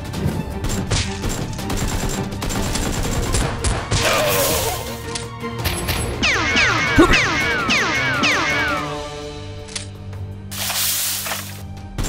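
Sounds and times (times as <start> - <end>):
background music: 0.0 - 12.0
rapid gunfire bursts: 0.6 - 3.9.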